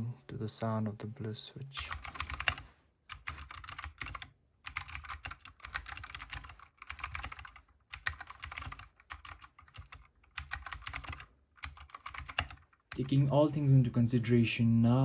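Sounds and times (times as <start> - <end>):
typing on clicky mechanical keyboard: 1.8 - 13.2.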